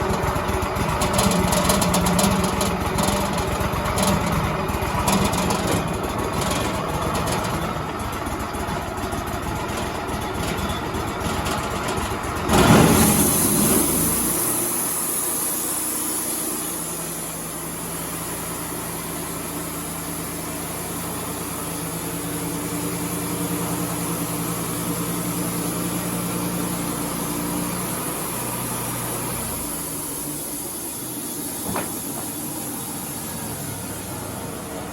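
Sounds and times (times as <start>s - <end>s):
band sawmill running: 0.0s - 34.9s.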